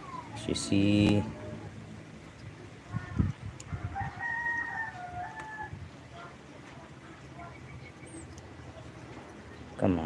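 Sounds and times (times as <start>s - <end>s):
rooster crowing: 3.7s - 5.8s.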